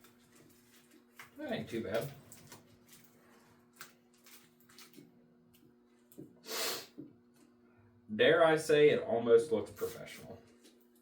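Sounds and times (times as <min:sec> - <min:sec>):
faint steady hum: 0:00.0 - 0:11.0
brief hiss: 0:06.4 - 0:07.0.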